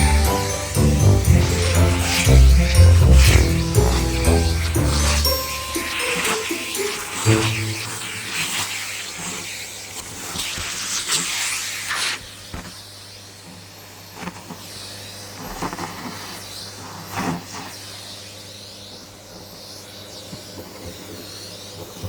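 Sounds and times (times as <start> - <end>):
vacuum cleaner running: 0.0 - 12.9.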